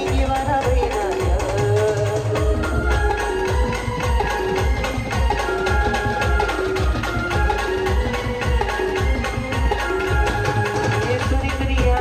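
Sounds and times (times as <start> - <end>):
light percussion: 0.0 - 12.0
low drum beat: 0.0 - 12.0
held wavering melody: 2.4 - 12.0.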